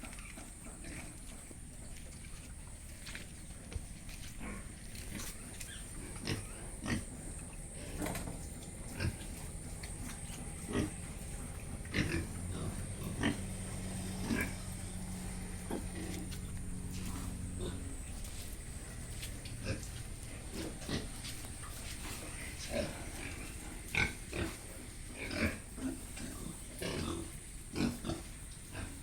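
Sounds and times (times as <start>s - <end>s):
pigs grunting: 0.0s - 29.0s.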